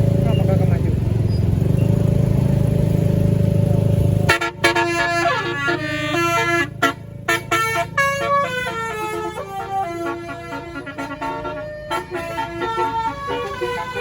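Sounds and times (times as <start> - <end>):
deep engine rumble: 0.0 - 14.0
bus musical horn tune: 4.2 - 14.0.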